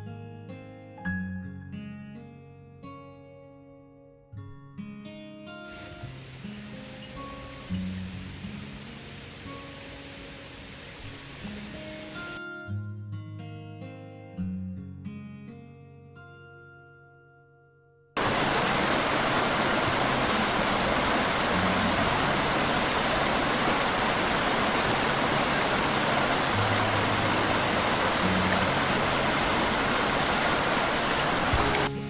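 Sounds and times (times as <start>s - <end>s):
steady rushing noise: 18.2s - 31.9s.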